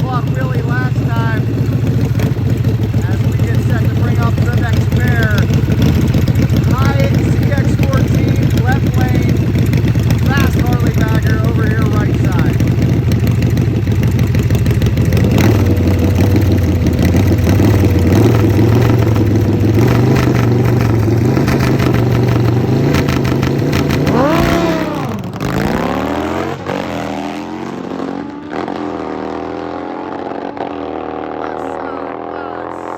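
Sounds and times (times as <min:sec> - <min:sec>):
motorcycle engine revving: 0:00.0 - 0:32.9.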